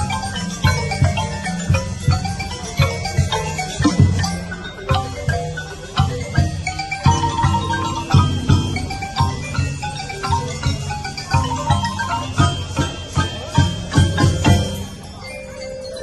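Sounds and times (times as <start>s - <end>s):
marimbas and xylophones playing: 0.0s - 16.0s
low drum strikes: 7.0s - 13.0s.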